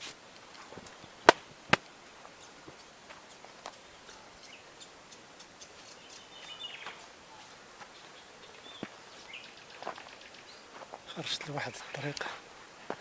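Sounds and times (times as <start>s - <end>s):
rustling through brush: 0.0s - 13.0s
twigs and branches snapping: 0.3s - 2.0s.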